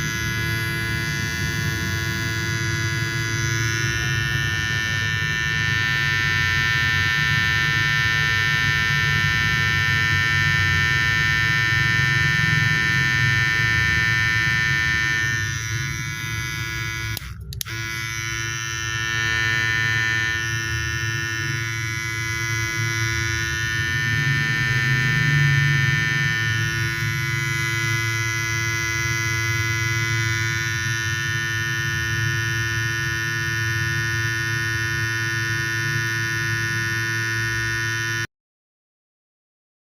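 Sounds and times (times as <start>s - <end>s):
electric hair clipper buzzing: 0.0s - 38.3s.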